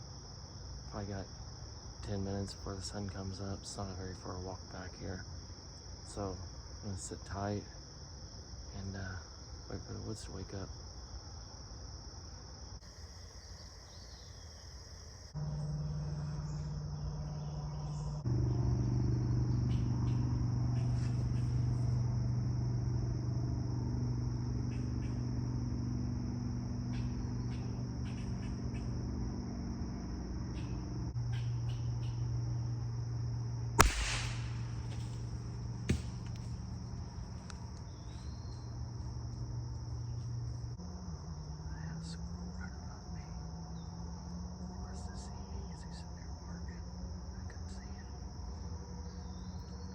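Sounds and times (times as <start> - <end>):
insects trilling: 0.0 - 49.9
low steady drone: 15.3 - 49.9
sharp click: 33.8 - 35.3.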